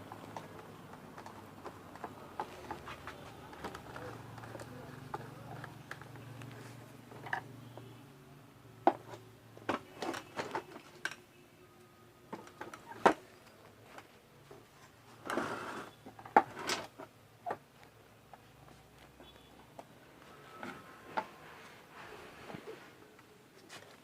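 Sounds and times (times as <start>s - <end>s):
rustling scrape: 14.6s - 16.0s.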